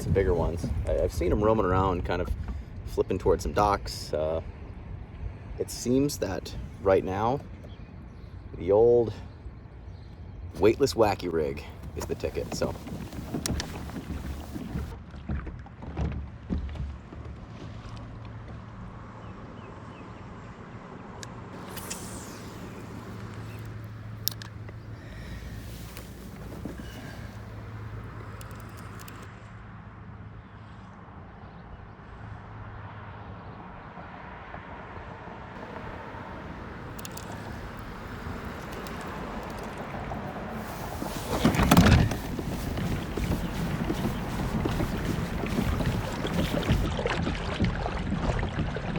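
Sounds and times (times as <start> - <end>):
wind: 0.0 - 48.9
water noise: 10.6 - 15.0, 21.6 - 29.2, 35.6 - 48.6
knocks and clatter on kayak: 11.7 - 17.4, 24.2 - 29.0, 35.6 - 48.9.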